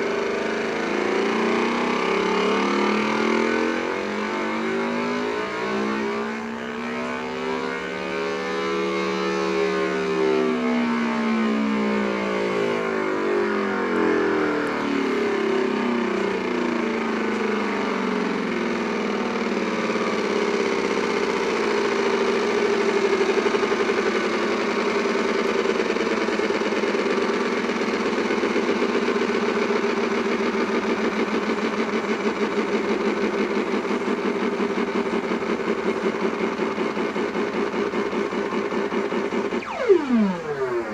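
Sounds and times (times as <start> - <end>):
electronic buzzing drone: 0.0 - 20.0, 39.4 - 40.9.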